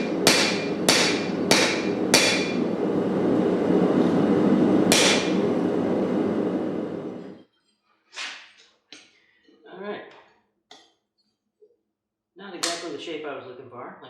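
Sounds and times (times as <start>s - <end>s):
hammer ringing on anvil: 0.0s - 2.7s, 4.9s - 5.4s
forge roaring: 0.0s - 7.4s.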